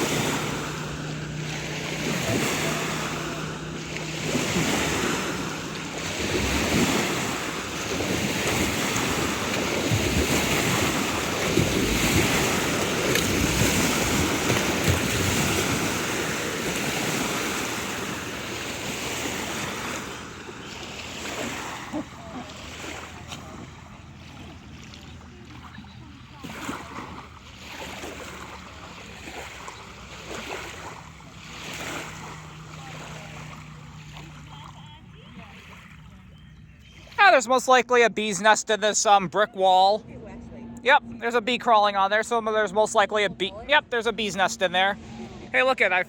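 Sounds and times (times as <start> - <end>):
wind buffeting microphone: 0.0 - 21.9
surf breaking on a beach: 0.0 - 36.0.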